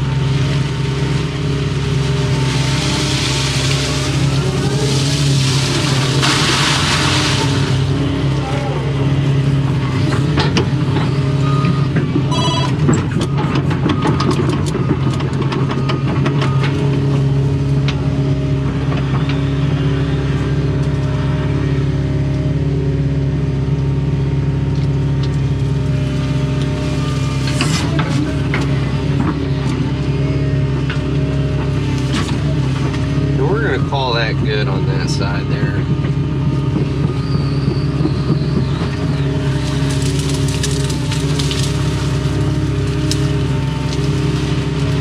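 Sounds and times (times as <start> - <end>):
excavator diesel engine running: 0.0 - 45.0
bucket digging and scraping: 2.6 - 7.8
brief beep: 11.5 - 12.9.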